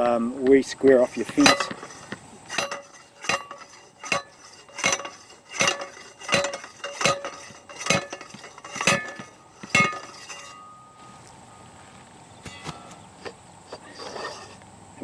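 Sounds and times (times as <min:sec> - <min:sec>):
post rammer striking metal: 0:01.1 - 0:11.2.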